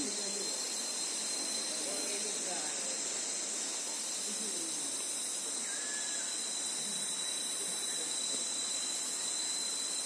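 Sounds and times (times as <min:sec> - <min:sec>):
forest insects droning: 0:00.0 - 0:10.0
thin constant whine: 0:00.0 - 0:10.0.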